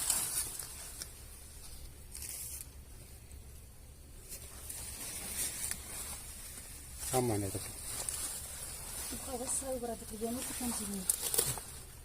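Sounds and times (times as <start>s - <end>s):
rustling of leafy plants: 0.0s - 12.0s
steady low rumble: 0.0s - 12.0s.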